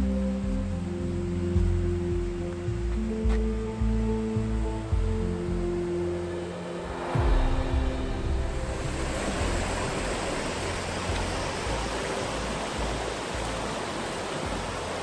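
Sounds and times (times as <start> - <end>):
low rumble: 3.5 - 13.7
river flowing over rocks: 5.7 - 15.0.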